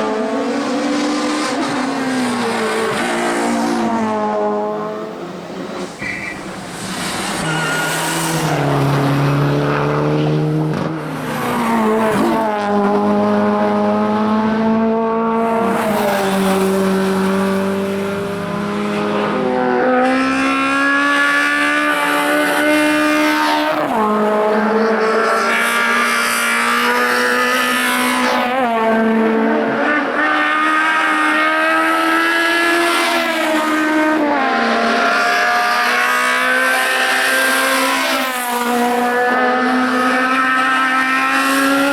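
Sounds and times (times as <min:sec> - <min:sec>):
race car engine revving: 0:00.0 - 0:41.9.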